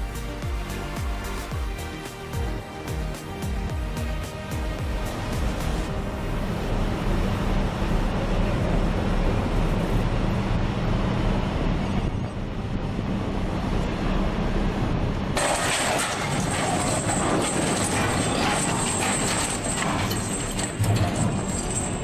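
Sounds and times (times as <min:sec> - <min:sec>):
heavy machine engine humming: 0:00.0 - 0:22.0
hissing and clattering noise: 0:15.4 - 0:22.0.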